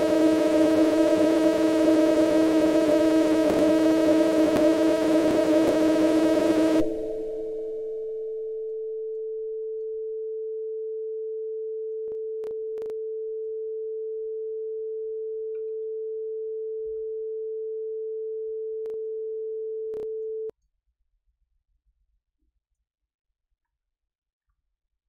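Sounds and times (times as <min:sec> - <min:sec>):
synthesizer steady tone: 0:00.0 - 0:11.7.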